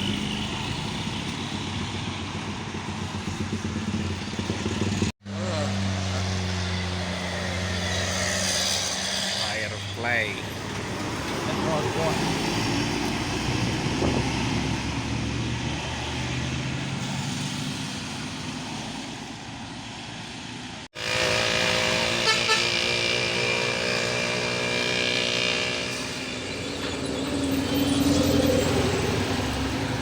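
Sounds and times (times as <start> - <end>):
bus engine: 0.0 - 30.0
road noise: 0.0 - 30.0
low held horn tone: 21.0 - 26.4
multi-tone bus horn tune: 21.0 - 26.4.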